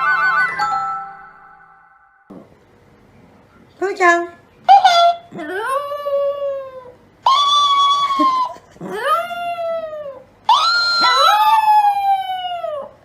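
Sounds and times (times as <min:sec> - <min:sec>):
dog howling: 0:04.7 - 0:13.0.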